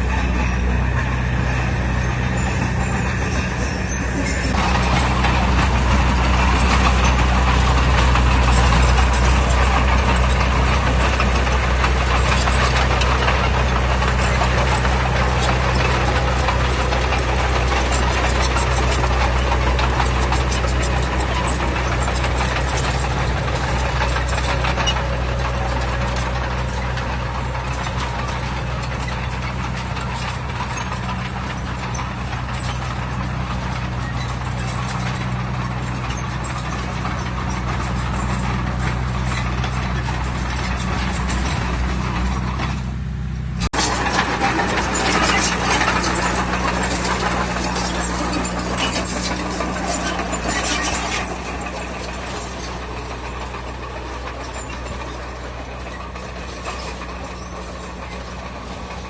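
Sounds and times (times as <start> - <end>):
diesel engine running: 0.0 - 59.0
rattle of rapid clicks: 43.8 - 59.0.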